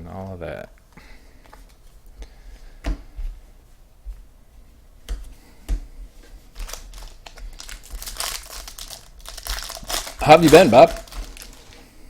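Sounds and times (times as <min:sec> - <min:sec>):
card rustle: 0:06.6 - 0:11.9.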